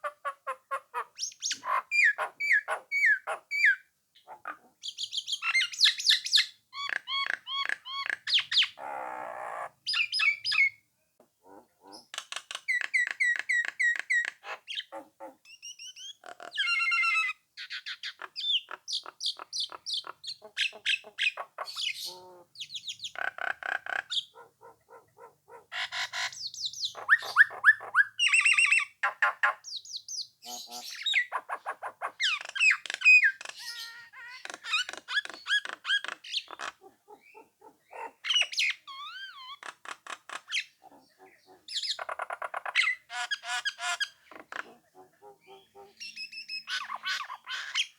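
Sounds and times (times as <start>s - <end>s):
myna whistles and squawks: 25.8s - 29.6s.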